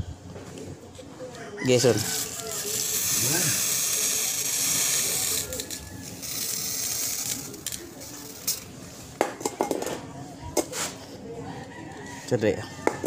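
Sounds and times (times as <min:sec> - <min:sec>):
steady hiss: 0:02.0 - 0:08.7.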